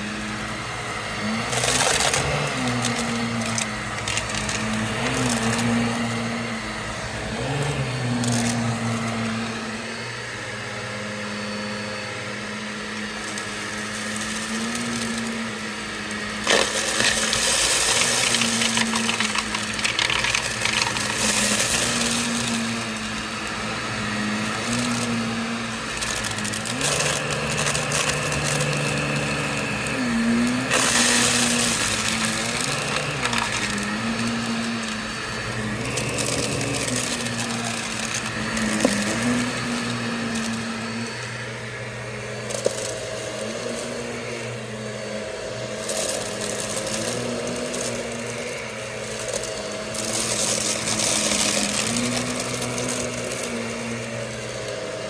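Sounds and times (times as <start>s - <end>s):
vacuum cleaner motor running: 0.0s - 55.0s
crunchy debris being sucked up: 0.2s - 9.3s, 16.1s - 41.2s, 45.8s - 54.7s.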